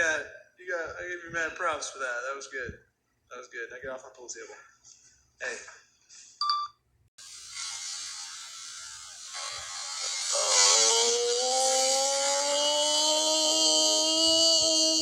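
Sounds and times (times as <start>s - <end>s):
slowed-down buzzing drone: 7.2s - 15.0s.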